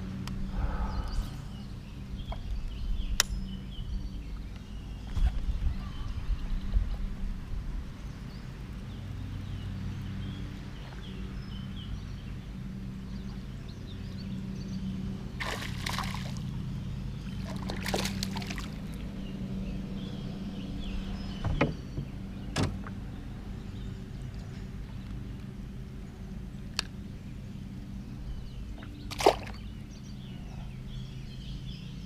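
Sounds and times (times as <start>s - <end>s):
low motor hum: 0.0s - 32.0s.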